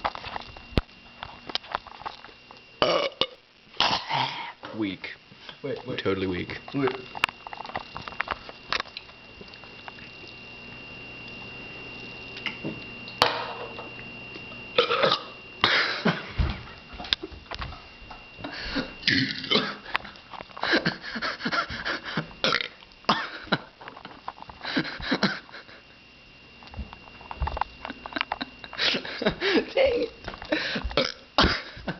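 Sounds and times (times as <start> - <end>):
man belching: 2.8 - 4.6, 14.8 - 15.8, 19.0 - 19.8, 22.4 - 23.3, 30.9 - 31.6.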